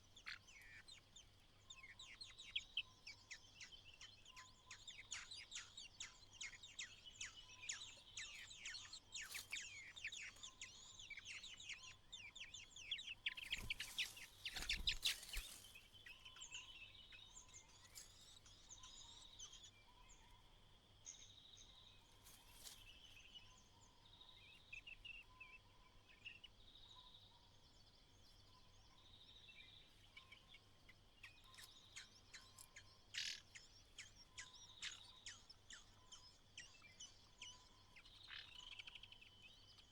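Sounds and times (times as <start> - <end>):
birds chirping: 0.0 - 20.4.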